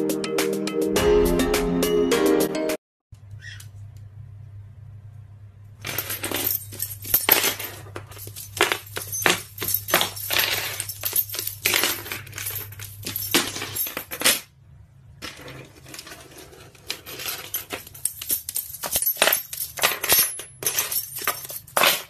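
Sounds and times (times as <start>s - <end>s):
small hard objects clinking: 5.9s - 14.3s.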